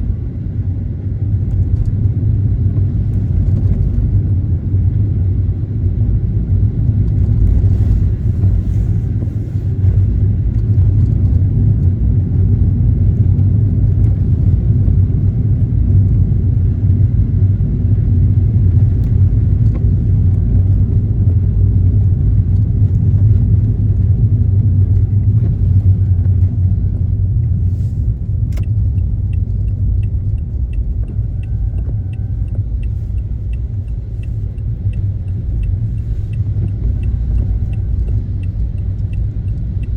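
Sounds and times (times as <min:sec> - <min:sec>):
car driving rumble from inside: 0:00.0 - 0:39.9
turn signal ticking: 0:15.8 - 0:39.9.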